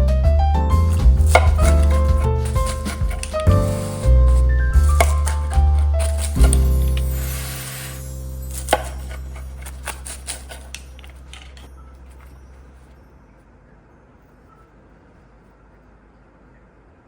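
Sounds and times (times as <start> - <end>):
background music low chord: 0.0 - 13.5
knife knocking on board: 0.9 - 7.1
knife crunching through pie crust: 0.9 - 11.7.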